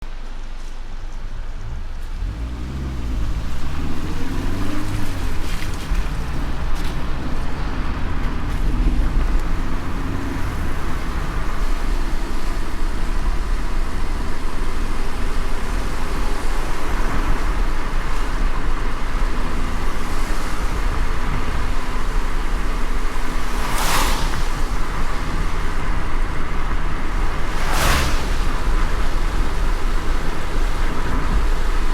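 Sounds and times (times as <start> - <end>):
car engine and road rumble: 0.0 - 31.9
tyres hissing on wet road: 0.1 - 31.9
loud whoosh: 22.6 - 31.0.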